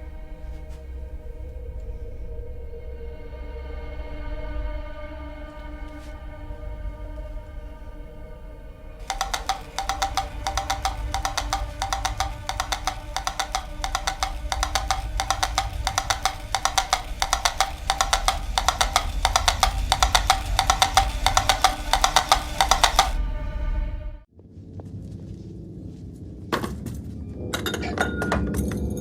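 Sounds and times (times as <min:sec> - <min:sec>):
mechanical toy drum beating: 0:09.0 - 0:23.2.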